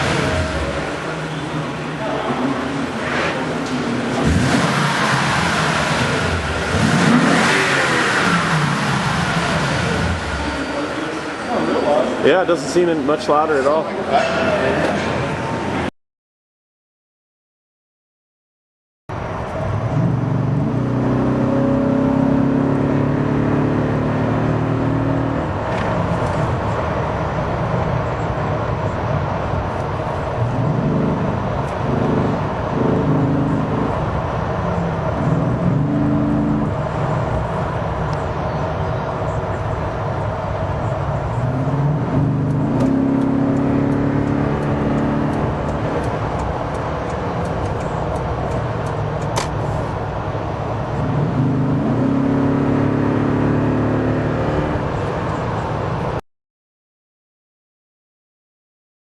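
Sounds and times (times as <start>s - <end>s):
truck engine accelerating: 0.0s - 13.7s, 19.2s - 55.8s
road noise: 0.0s - 15.9s, 19.1s - 56.2s.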